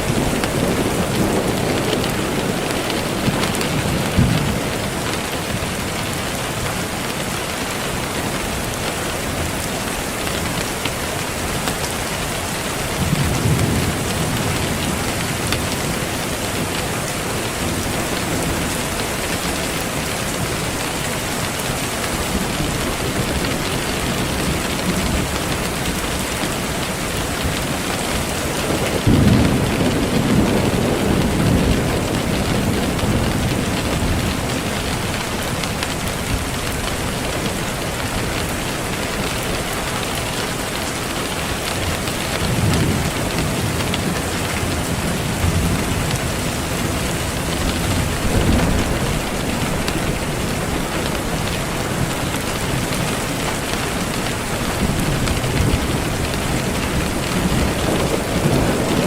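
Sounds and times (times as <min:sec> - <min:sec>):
heavy rain: 0:00.0 - 0:59.0
thunder rolling: 0:28.2 - 0:38.2, 0:42.4 - 0:59.0.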